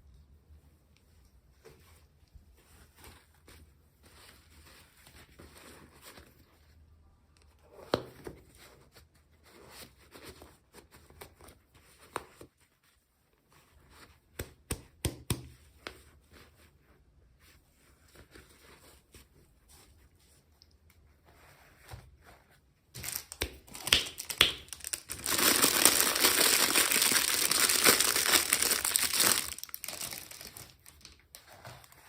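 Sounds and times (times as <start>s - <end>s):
packaging rustling and tearing: 23.0s - 32.0s.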